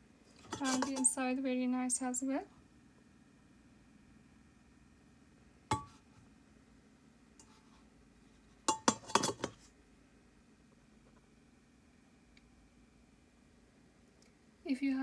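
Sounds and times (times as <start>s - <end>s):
kettle lid clinking: 0.5s - 1.1s, 5.7s - 6.0s, 8.7s - 9.6s.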